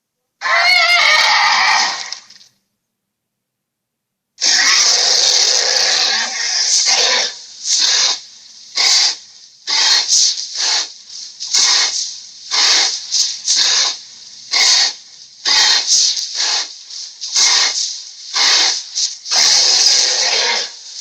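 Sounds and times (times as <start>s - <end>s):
short sharp hisses: 4.4s - 21.0s.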